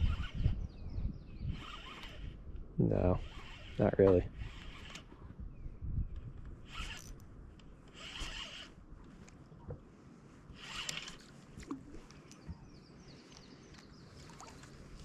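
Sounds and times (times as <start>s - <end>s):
rasping rustles: 10.5s - 12.4s.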